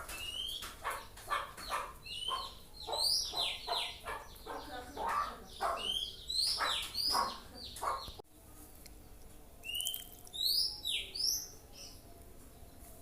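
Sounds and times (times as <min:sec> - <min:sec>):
high whistled bird notes: 0:09.6 - 0:12.0.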